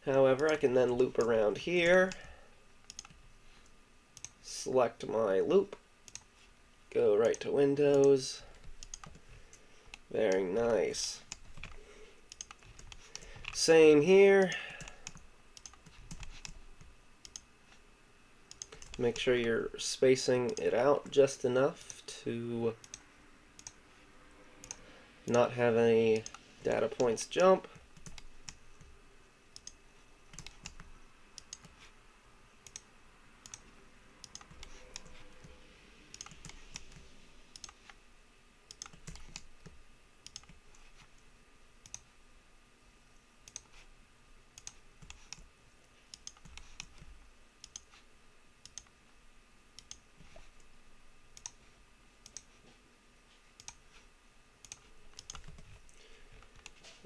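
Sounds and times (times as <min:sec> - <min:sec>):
mouse and keyboard clicks: 0:34.2 - 0:38.0.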